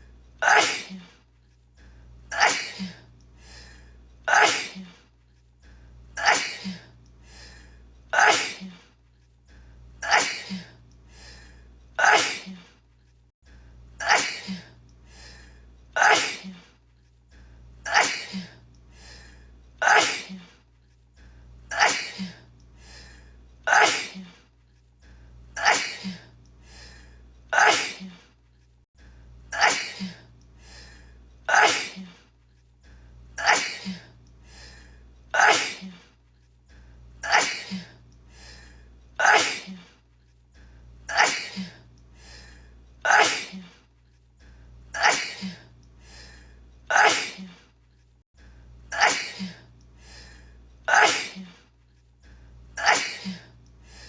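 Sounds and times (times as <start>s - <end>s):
woman sneezing: 0.4s - 1.1s, 4.3s - 5.0s, 8.2s - 8.8s, 12.0s - 12.6s, 16.0s - 16.6s, 19.8s - 20.5s, 23.7s - 24.3s, 27.6s - 28.2s, 29.6s - 30.2s, 31.5s - 32.2s, 35.4s - 36.0s, 39.2s - 39.9s, 43.1s - 43.7s, 46.9s - 47.6s, 49.0s - 49.6s, 50.9s - 51.6s, 52.8s - 53.5s.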